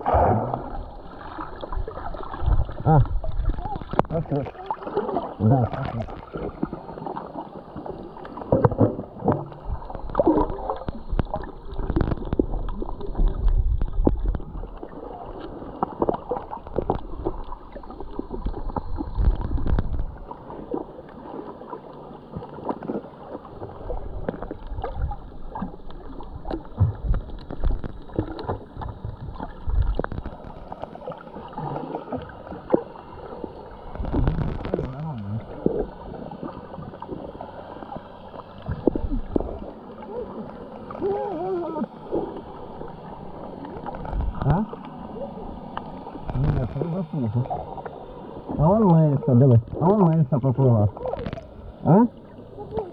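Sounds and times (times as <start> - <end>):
low rumbles: 0.0 - 4.3
water sloshing and gurgling: 0.0 - 52.9.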